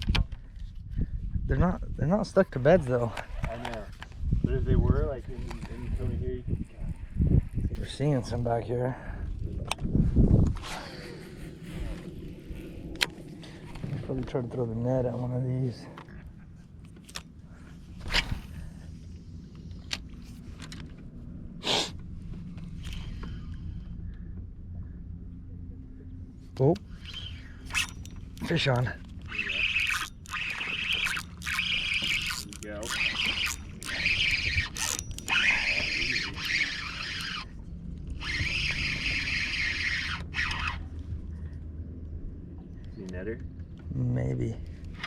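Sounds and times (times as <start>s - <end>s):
boat motor humming: 16.0s - 42.7s
fishing reel whirring: 26.9s - 41.0s.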